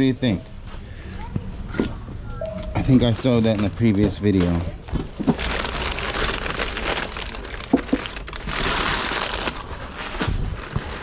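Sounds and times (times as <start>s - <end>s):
packing material crinkling: 3.4s - 11.0s.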